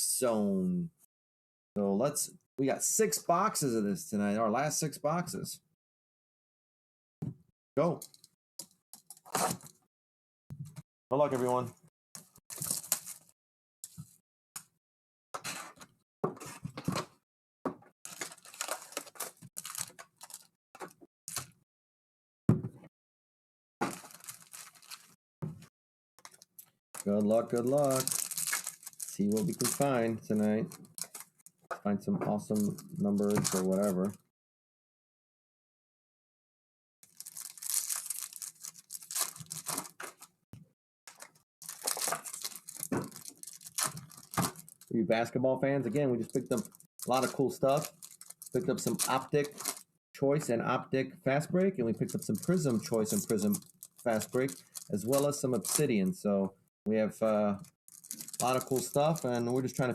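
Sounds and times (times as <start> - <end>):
plastic wrapping tearing and crinkling: 12.5 - 13.3, 18.1 - 20.5, 23.8 - 25.2, 26.2 - 31.4, 32.5 - 34.1, 37.1 - 40.3, 41.1 - 44.9, 46.3 - 49.9, 52.1 - 55.9, 57.9 - 59.9.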